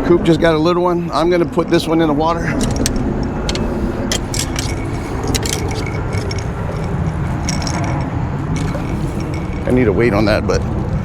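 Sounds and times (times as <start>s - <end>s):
steady low rumble: 0.0s - 11.0s
fishing gear clinking: 2.4s - 10.2s.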